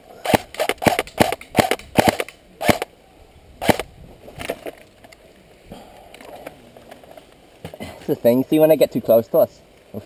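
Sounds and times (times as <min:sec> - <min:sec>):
airsoft rifle shots: 0:00.2 - 0:02.9, 0:03.6 - 0:03.9.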